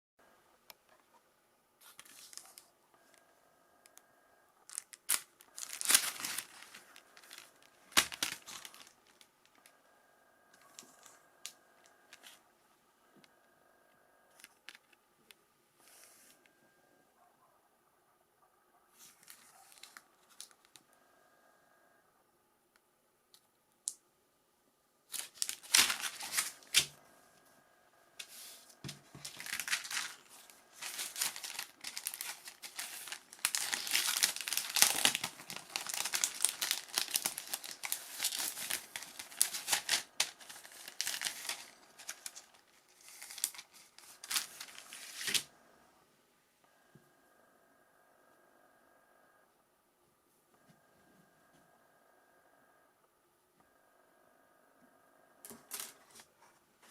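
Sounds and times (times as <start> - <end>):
plastic packaging crinkling: 1.8 - 2.7, 4.6 - 9.7, 19.0 - 20.8, 25.1 - 27.0, 28.2 - 45.5, 55.5 - 56.3.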